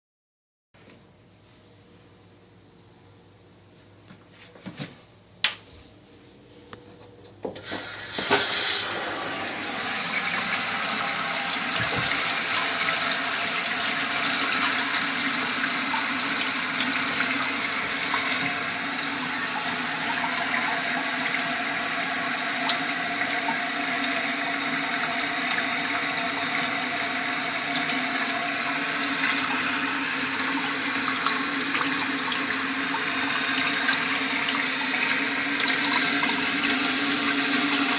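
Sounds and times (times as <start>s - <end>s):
toilet flushing: 7.5s - 37.9s
toilet tank refilling hiss: 7.6s - 37.9s.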